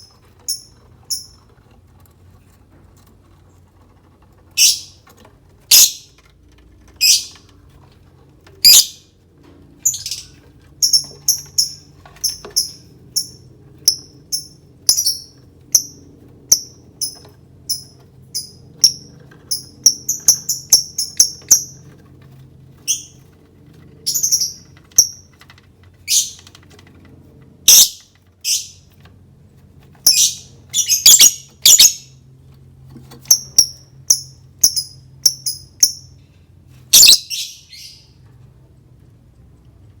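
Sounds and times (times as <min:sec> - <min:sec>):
lovebird chirping: 0:04.6 - 0:05.0, 0:05.7 - 0:06.1, 0:07.0 - 0:07.4, 0:08.6 - 0:09.0, 0:09.8 - 0:21.8, 0:24.1 - 0:25.3, 0:26.1 - 0:26.4, 0:27.7 - 0:28.8, 0:30.0 - 0:32.1, 0:33.3 - 0:36.1, 0:36.9 - 0:38.1.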